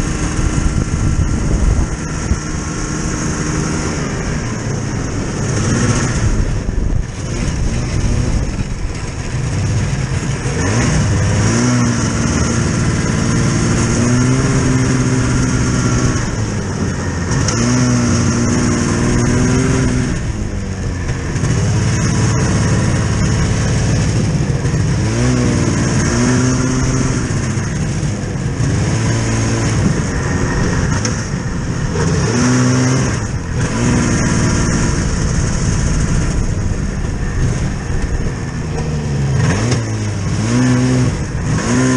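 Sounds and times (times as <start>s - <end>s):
vehicle engine running under load: 0.0s - 41.9s.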